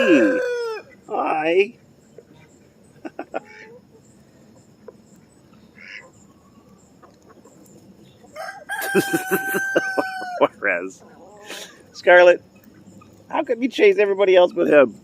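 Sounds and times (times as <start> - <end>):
rooster crowing: 0.0 - 1.0, 8.3 - 10.5
chickens clucking: 0.0 - 15.0.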